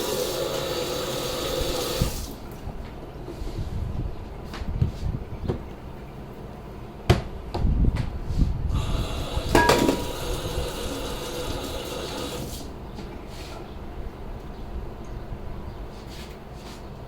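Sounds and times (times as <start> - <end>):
steady noisy sound: 0.0 - 17.0
utensils and dishes clattering: 9.5 - 10.2.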